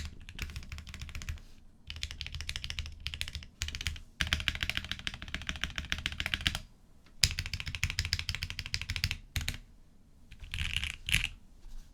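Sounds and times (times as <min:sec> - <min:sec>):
fast typing on mechanical keyboard: 0:00.0 - 0:09.6, 0:10.4 - 0:11.3.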